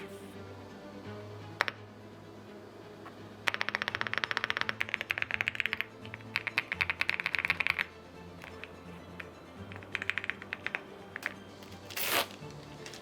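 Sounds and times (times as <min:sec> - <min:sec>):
background music: 0:00.0 - 0:13.0.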